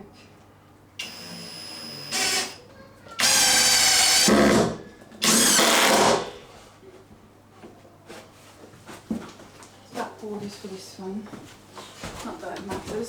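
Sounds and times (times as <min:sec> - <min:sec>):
power drill running: 0:01.0 - 0:02.6, 0:03.2 - 0:06.3.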